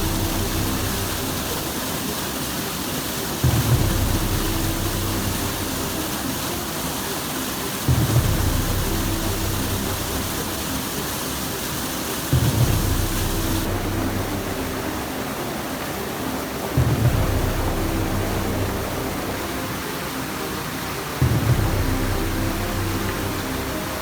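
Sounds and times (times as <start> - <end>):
low layered drone: 0.0 - 24.0
rain-like hiss: 0.0 - 24.0.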